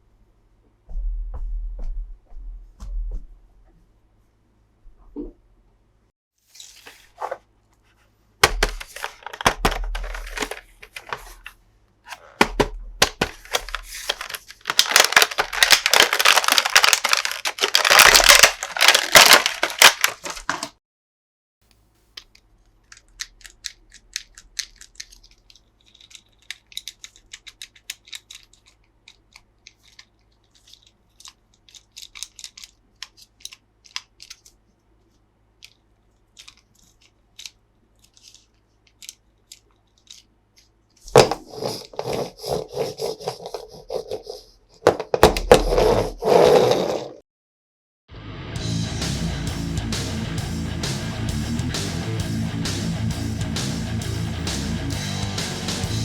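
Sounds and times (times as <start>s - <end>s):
packaging tearing and crinkling: 8.4s - 11.5s, 13.0s - 20.8s
light clicks and handling noises: 21.7s - 41.0s.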